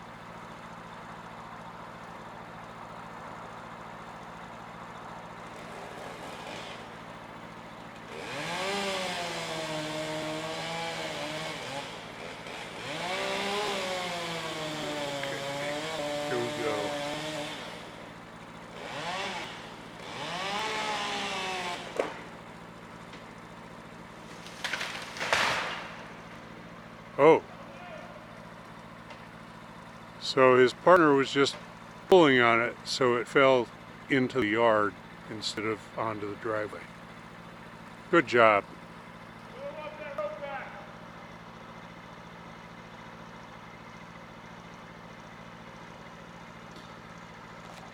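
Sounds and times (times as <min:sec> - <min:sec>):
chainsaw running: 0:00.0 - 0:47.9
engine idling: 0:00.0 - 0:47.9
sharp crack: 0:24.2 - 0:26.2
tree top crashing through branches: 0:24.2 - 0:26.2.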